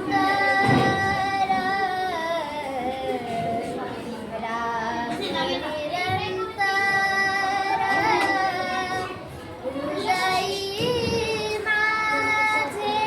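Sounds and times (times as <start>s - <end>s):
child singing devotional song: 0.0s - 13.0s.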